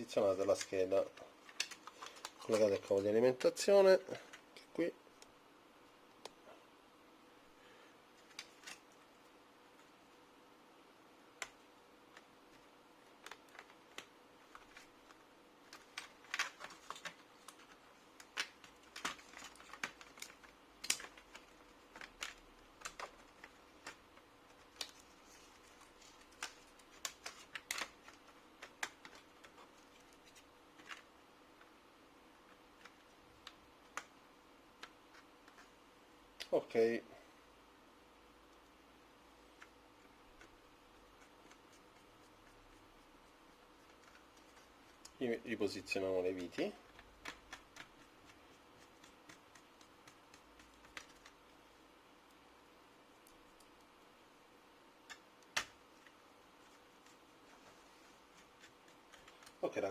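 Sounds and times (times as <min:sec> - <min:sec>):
faint steady hum: 0:00.0 - 0:59.9
laptop parts clicking: 0:01.4 - 0:02.8, 0:11.4 - 0:31.7, 0:32.4 - 0:34.2, 0:46.4 - 0:51.5, 0:55.0 - 0:59.6.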